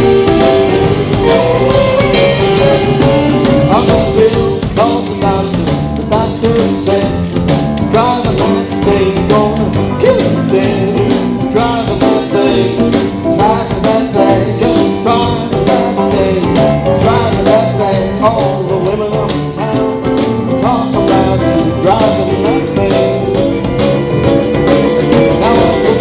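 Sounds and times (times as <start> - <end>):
gliding lead guitar lines: 0.0 - 3.8, 23.0 - 26.0
live band playing instrumental: 0.0 - 26.0
steady drum beat: 0.0 - 26.0.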